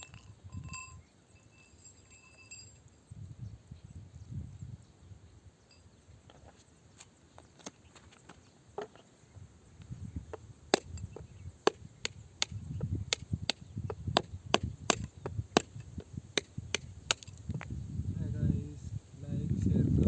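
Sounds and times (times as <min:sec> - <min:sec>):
digging tool striking rock: 0:10.3 - 0:17.6.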